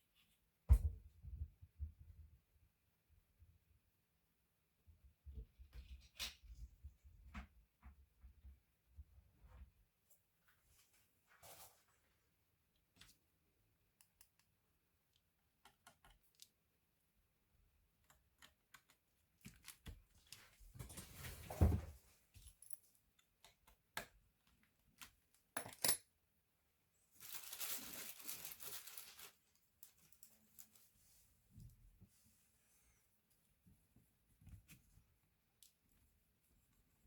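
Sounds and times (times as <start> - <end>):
small clicks and taps of tools: 14.0 - 16.5, 18.0 - 20.0, 22.5 - 26.0.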